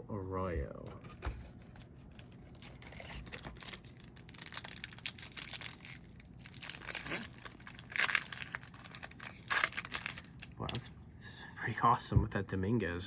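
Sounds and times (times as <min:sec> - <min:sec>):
wrapper crinkling and tearing: 0:02.1 - 0:10.8.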